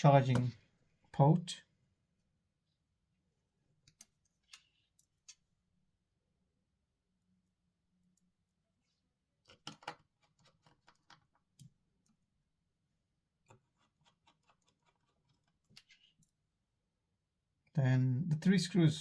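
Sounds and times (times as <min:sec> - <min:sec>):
small tools clicking on phone: 0:03.8 - 0:05.4, 0:09.4 - 0:11.8.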